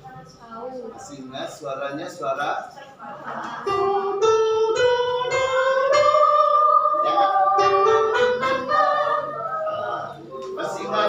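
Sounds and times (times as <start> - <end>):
children's choir singing held notes: 3.2 - 11.0
instrument striking notes: 3.7 - 9.2.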